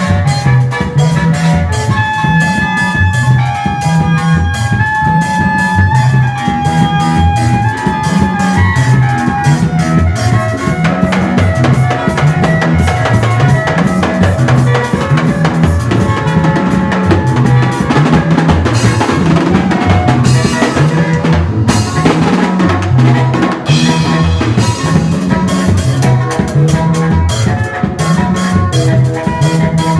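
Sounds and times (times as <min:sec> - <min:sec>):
drum kit playing a beat: 0:00.0 - 0:29.9
repeating bass line: 0:00.0 - 0:29.9.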